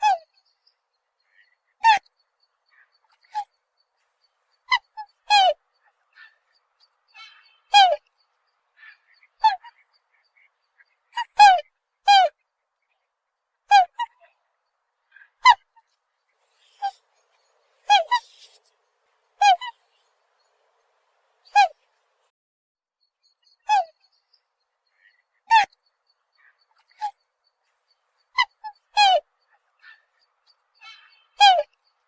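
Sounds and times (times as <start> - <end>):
swan calling: 0.0 - 0.5, 1.3 - 2.1, 4.6 - 6.5, 7.1 - 8.1, 8.8 - 12.4, 13.7 - 14.4, 15.1 - 18.7, 19.4 - 20.1, 21.4 - 21.9, 23.6 - 24.0, 25.0 - 25.8, 28.3 - 30.2, 30.8 - 31.8.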